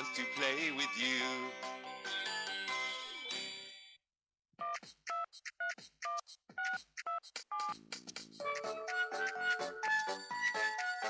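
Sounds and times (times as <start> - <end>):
toy jingle: 0.0 - 3.9, 8.4 - 11.0
toy telephone dialing beeps: 4.6 - 7.8.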